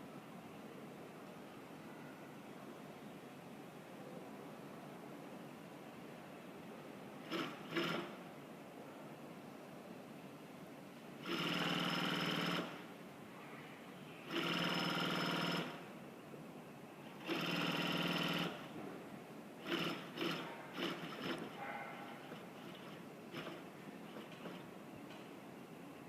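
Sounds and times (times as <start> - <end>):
sewing machine rattling: 7.2 - 8.2, 11.2 - 12.8, 14.3 - 15.8, 17.2 - 18.7, 19.6 - 24.7.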